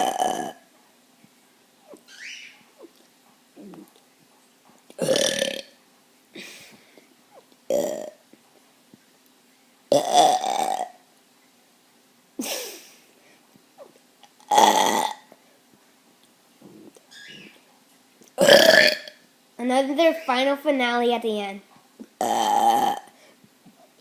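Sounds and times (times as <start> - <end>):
person burping: 0.0 - 0.6, 5.0 - 5.8, 7.7 - 8.2, 9.9 - 11.0, 14.4 - 15.3, 18.4 - 19.2, 22.2 - 23.2.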